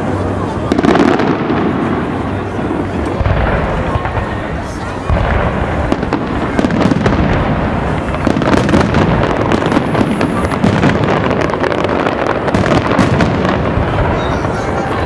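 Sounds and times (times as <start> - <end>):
fireworks bursting: 0.0 - 15.0.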